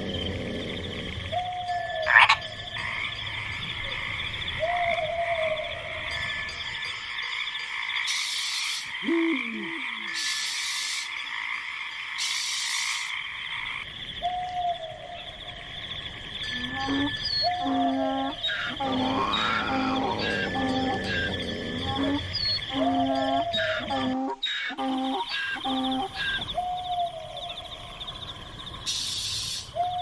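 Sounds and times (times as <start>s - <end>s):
lower falling animal call: 9.0s - 10.3s, 16.5s - 26.4s.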